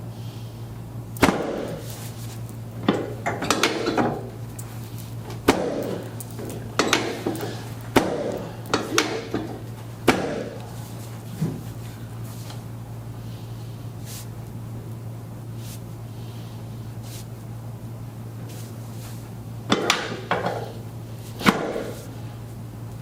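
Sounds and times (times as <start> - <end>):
sharp whacks of chiropractic thrusts: 1.2 - 2.0, 21.4 - 22.1.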